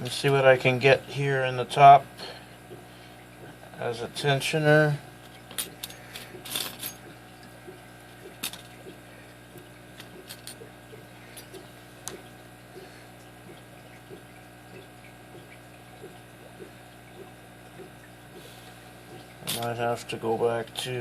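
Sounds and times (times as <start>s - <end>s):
steady low hum: 0.0s - 21.0s
faint regular ticking: 5.3s - 20.9s.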